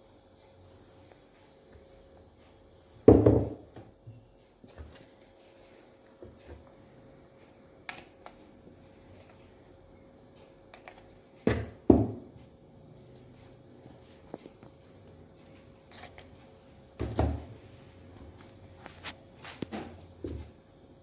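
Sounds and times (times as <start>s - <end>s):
things set down with thuds: 17.0s - 17.5s.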